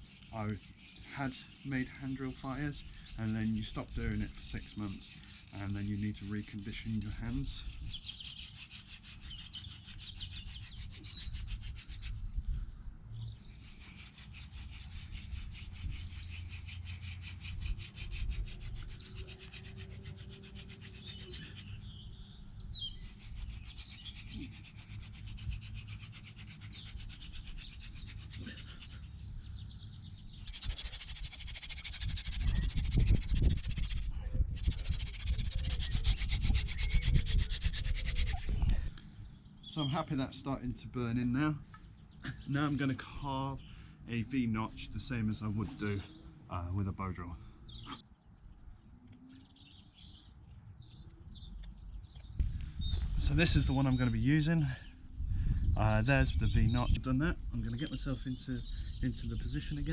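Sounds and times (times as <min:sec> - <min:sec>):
birds chirping: 0:00.0 - 0:59.9
wood-on-wood rubbing of spindle: 0:30.4 - 0:38.8.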